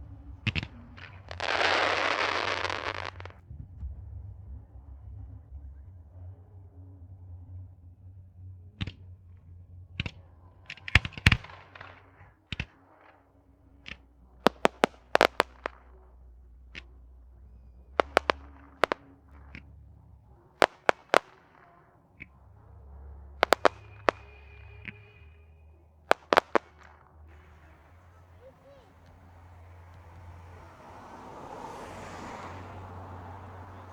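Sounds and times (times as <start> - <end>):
firework crackling: 0.0 - 3.4, 10.9 - 22.5, 23.4 - 33.9
firework shells bursting: 0.5 - 3.4, 11.0 - 22.4, 23.4 - 33.9.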